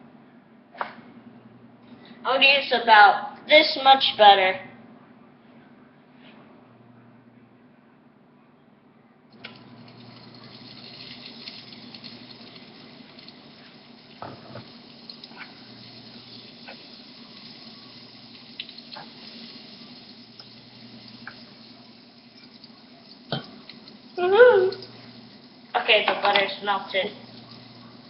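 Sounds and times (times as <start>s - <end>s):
butter sizzling in frying pan: 9.4s - 28.0s.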